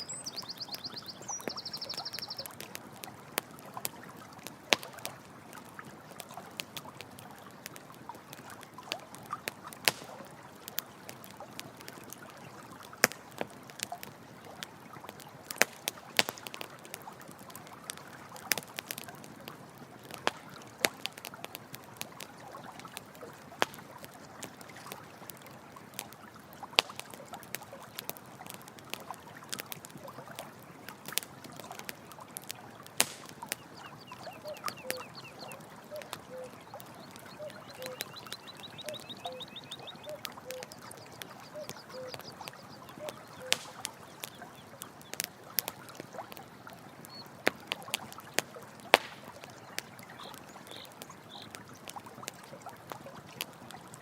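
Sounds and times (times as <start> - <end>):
campfire crackling and popping: 0.0 - 54.0
running water: 0.0 - 54.0.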